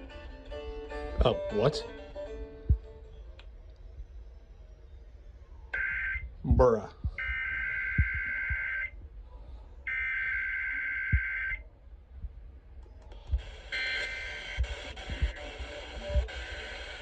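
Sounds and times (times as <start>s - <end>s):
warbling digital data tones: 7.2s - 8.9s.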